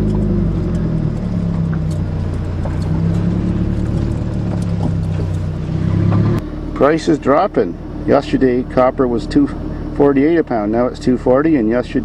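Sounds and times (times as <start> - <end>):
car engine idling: 0.0 - 12.0.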